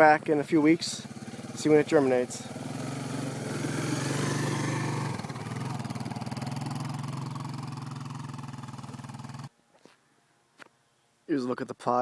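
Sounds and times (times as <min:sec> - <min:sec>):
small gasoline engine running: 0:00.1 - 0:09.5.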